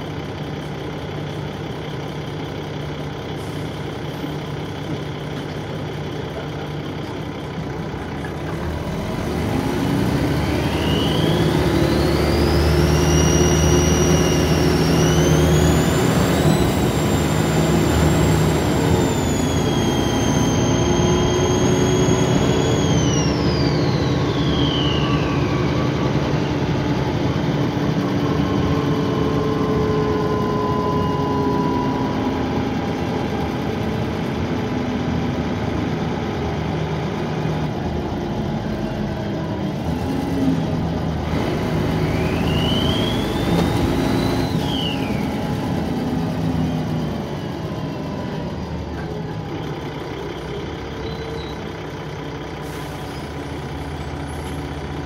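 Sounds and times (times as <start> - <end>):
bus diesel engine pulling: 0.0 - 55.0
high-pitched turbocharger whine: 0.0 - 55.0.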